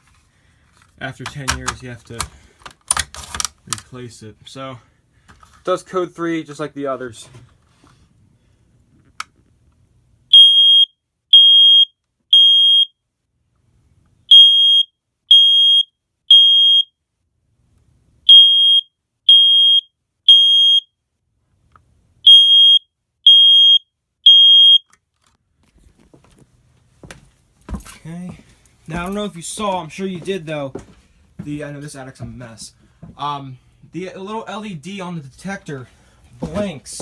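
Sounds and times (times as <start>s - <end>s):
smoke detector beeping: 10.3s - 12.9s, 14.3s - 16.9s, 18.3s - 20.8s, 22.3s - 24.8s.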